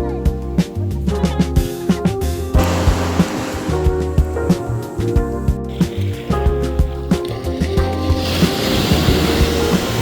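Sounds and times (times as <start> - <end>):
background music with steady beat: 0.0 - 8.3
hiss: 2.6 - 10.0.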